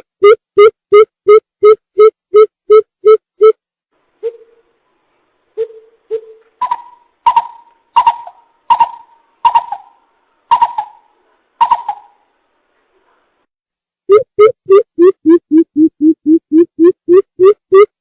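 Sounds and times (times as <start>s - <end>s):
coucal hooting: 5.6s - 12.2s.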